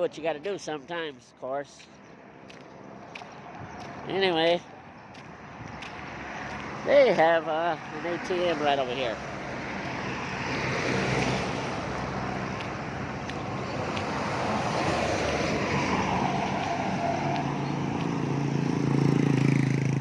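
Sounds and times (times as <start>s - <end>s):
highway traffic rushing: 0.0s - 20.0s
approaching vehicle engine hum: 4.7s - 20.0s.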